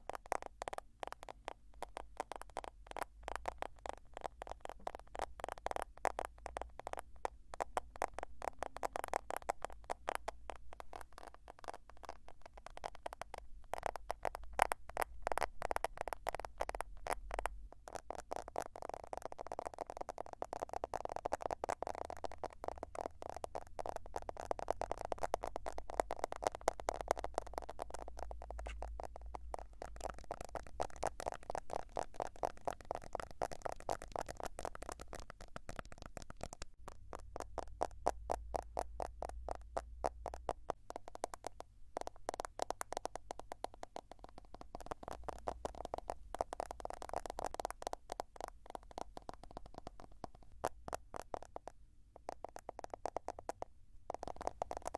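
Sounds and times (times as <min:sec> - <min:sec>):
fast tapping on a smartphone: 0:00.0 - 0:54.9.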